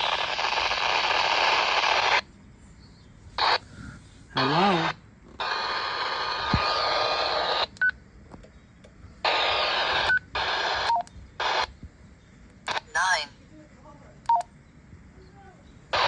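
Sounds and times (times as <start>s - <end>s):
radio static bursts: 0.0s - 2.2s, 3.4s - 7.9s, 9.2s - 11.8s, 12.7s - 13.2s.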